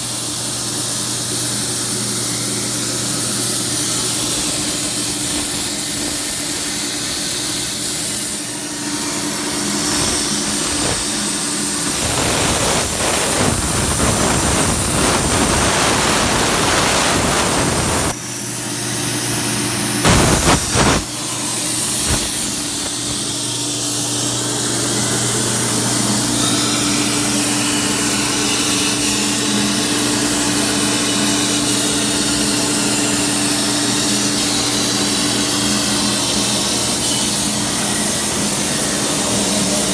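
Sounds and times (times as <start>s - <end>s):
cutting torch hissing: 2.6s - 18.7s, 19.5s - 24.4s
electrical hum: 8.5s - 18.2s, 20.0s - 23.4s
short loud blasts: 20.1s - 21.1s.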